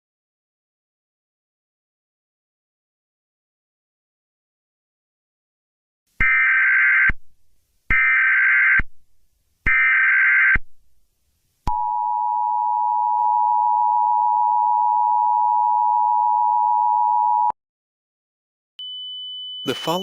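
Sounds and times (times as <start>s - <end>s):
data burst tones: 19.7s - 20.0s.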